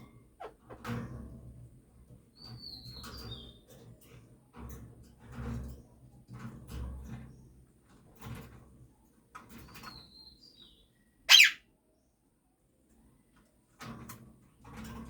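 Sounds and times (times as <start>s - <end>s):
faint high whistle: 11.3s - 11.6s
parrot squawk: 11.3s - 11.6s.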